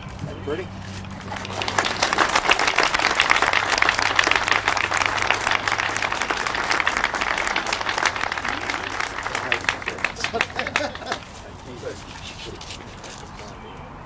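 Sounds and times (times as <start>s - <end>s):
audience applauding: 1.2s - 11.4s.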